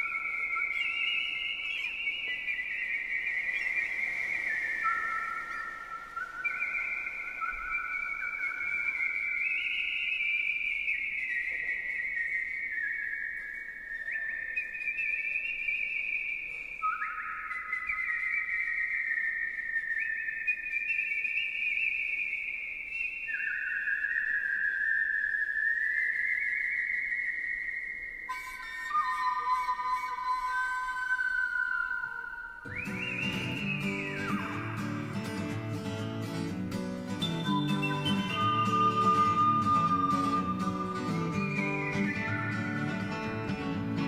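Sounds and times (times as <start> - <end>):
person whistling a melody: 0.0 - 44.0.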